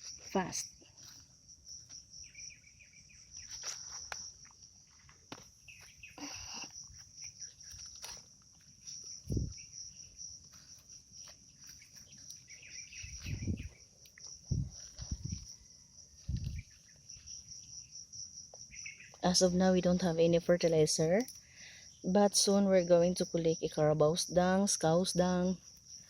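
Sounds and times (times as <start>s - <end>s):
insects trilling: 0.0s - 26.0s
bird chirps: 2.2s - 3.7s, 5.6s - 7.9s, 11.5s - 13.9s, 18.7s - 19.2s.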